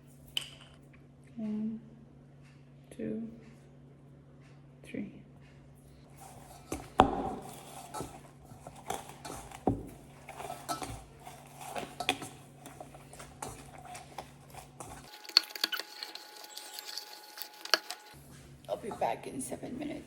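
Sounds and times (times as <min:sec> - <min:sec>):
utensil scraping mixing bowl: 0:06.1 - 0:20.0.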